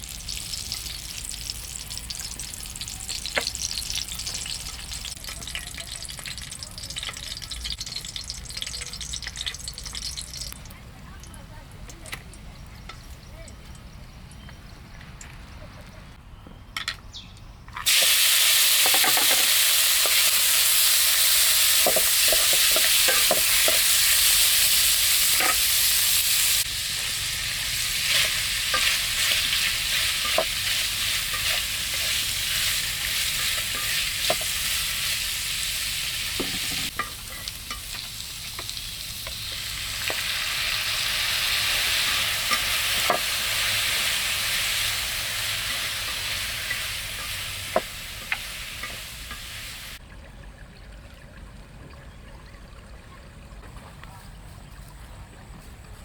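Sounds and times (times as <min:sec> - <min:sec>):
food sizzling in hot oil: 0:00.0 - 0:10.7, 0:17.8 - 0:50.0.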